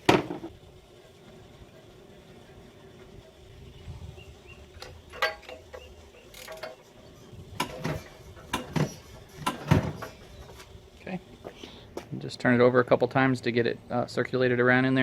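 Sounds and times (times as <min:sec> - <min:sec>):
mechanical clicks and clunks: 0:04.8 - 0:06.8, 0:07.5 - 0:10.4.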